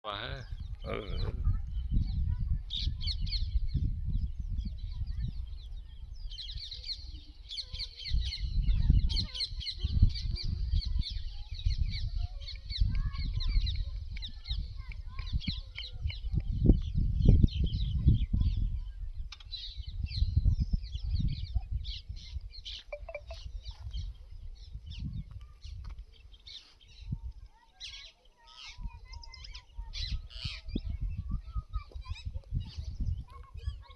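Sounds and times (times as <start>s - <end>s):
birds chirping: 0.1s - 16.8s, 22.7s - 27.1s.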